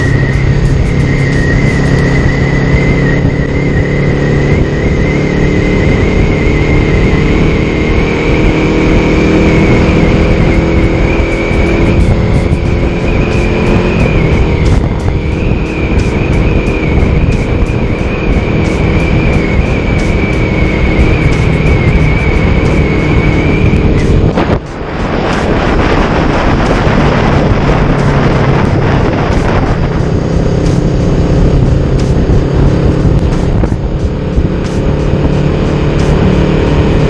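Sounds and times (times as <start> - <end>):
high whine: 0.0 - 37.0
motorcycle engine droning: 0.0 - 37.0
wind rush on microphone: 0.0 - 37.0.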